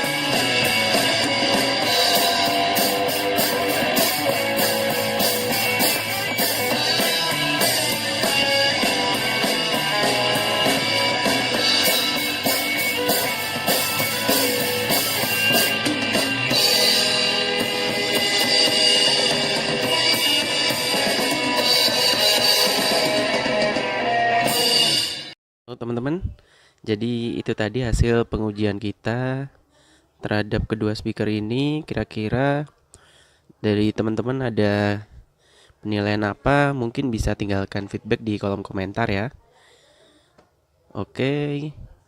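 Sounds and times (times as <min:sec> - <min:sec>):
rock music through small speaker: 0:00.0 - 0:25.4.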